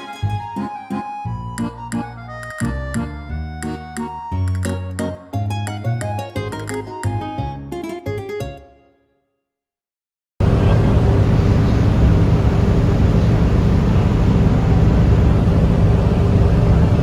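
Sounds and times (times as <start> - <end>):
boat engine running: 10.4 - 17.0.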